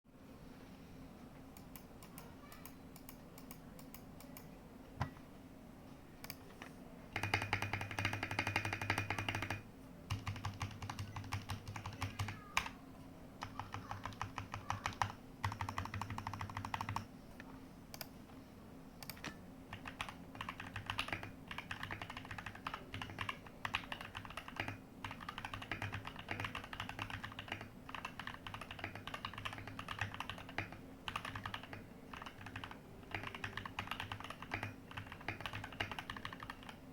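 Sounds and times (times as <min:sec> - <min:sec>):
typing on mechanical keyboard: 0:07.2 - 0:12.8, 0:13.4 - 0:17.1, 0:19.0 - 0:36.8.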